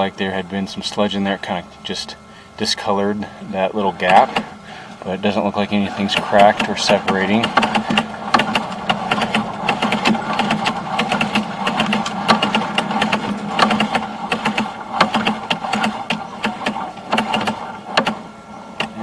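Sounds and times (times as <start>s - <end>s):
steady mechanical hum: 0.0s - 19.0s
cable reel clicking and rattling: 5.8s - 19.0s.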